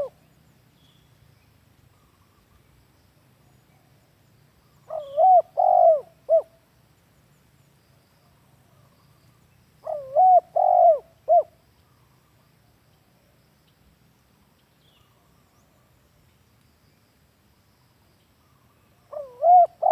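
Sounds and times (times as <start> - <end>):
dove cooing: 4.9 - 6.5, 9.8 - 11.6, 19.1 - 19.9.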